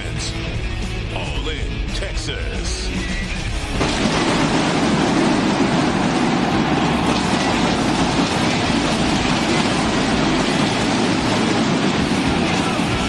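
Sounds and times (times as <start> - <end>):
stadium crowd cheering: 3.8 - 13.0.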